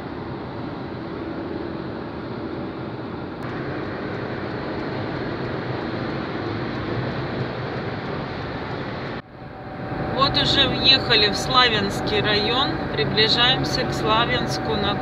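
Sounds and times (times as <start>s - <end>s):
car interior road noise: 3.4s - 15.0s.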